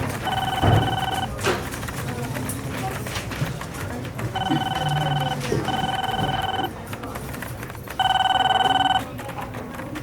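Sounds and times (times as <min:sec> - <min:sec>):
office background noise: 0:00.0 - 0:10.0
telephone ringing electronic trill: 0:00.2 - 0:01.3, 0:04.4 - 0:06.7, 0:08.0 - 0:09.0.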